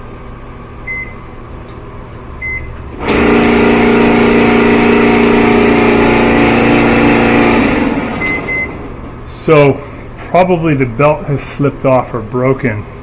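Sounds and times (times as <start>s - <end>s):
control panel beeps: 0.9s - 1.2s, 2.4s - 2.8s, 8.2s - 8.8s
dryer motor running: 2.0s - 10.6s.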